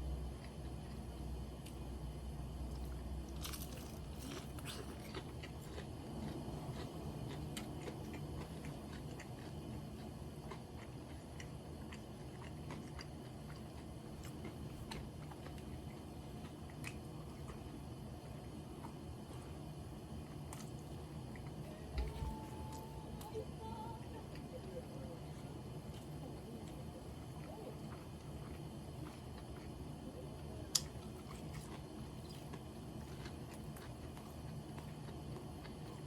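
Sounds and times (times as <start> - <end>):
chewing crunchy fried chicken: 0.0 - 36.0.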